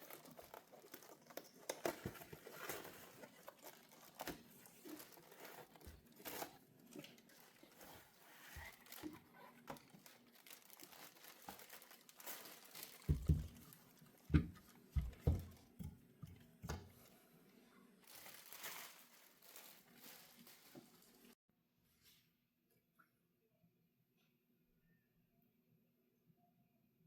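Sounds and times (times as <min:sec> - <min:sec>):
plastic packaging crinkling: 0:00.0 - 0:15.7, 0:18.0 - 0:21.4.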